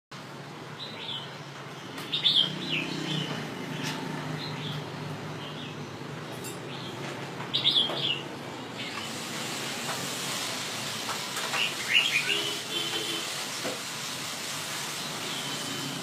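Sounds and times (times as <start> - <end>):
bird singing warbled phrases: 6.7 - 9.1.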